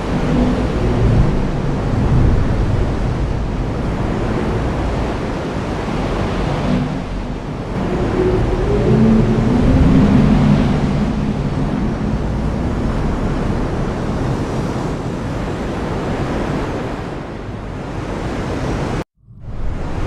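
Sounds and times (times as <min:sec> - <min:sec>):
low thunder rumble: 0:00.0 - 0:05.4, 0:06.1 - 0:14.6.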